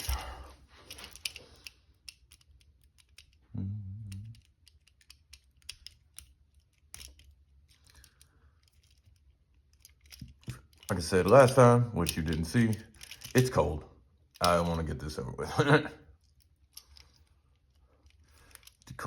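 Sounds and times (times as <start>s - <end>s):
metal clicks of handcuffs and lock pick: 0.9s - 3.4s, 4.1s - 13.6s, 16.2s - 19.0s.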